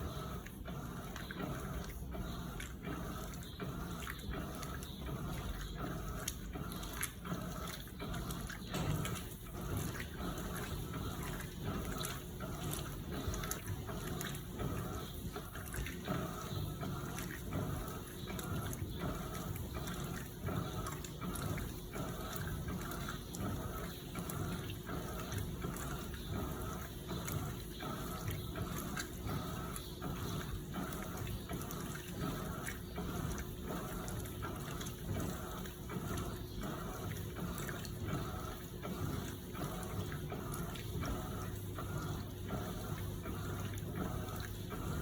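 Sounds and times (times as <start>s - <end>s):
faint motor hum: 0.0s - 45.0s
water sloshing in washing machine: 0.0s - 45.0s.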